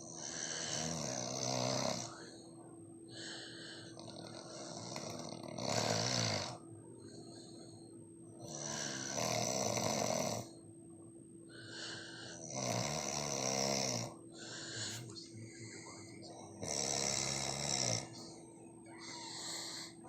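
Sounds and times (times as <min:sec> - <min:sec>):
person snoring loudly: 0:00.0 - 0:02.3, 0:04.0 - 0:06.6, 0:08.4 - 0:10.5, 0:12.3 - 0:15.0, 0:16.6 - 0:18.2
quiet breaths: 0:00.0 - 0:10.7, 0:11.4 - 0:20.0.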